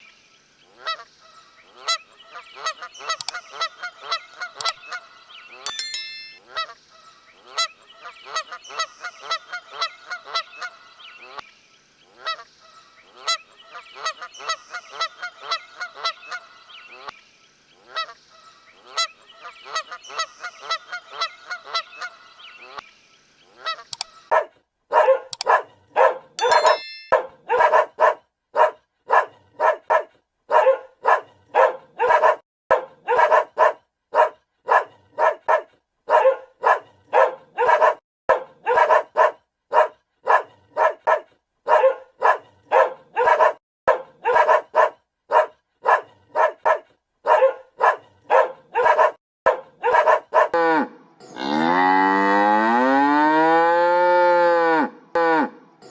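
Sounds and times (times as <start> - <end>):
goose honking: 0.8 - 5.1, 7.4 - 11.4, 12.2 - 17.1, 17.9 - 22.8, 23.6 - 24.3
dog barking: 24.3 - 26.4, 27.1 - 50.6.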